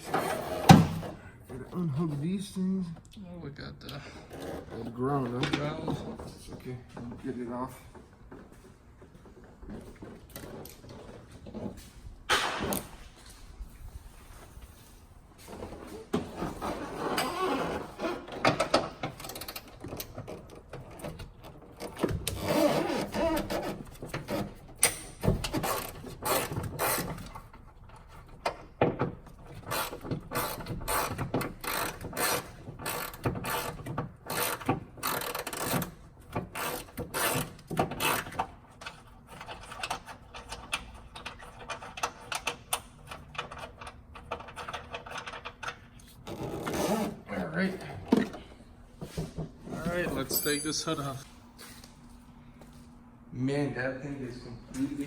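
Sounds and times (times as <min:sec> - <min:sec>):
hand tools clattering: 0:50.0 - 0:51.2.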